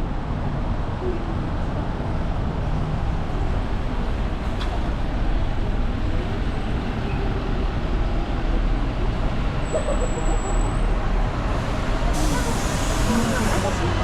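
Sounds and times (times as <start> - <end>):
bus engine rumble: 0.0 - 14.0.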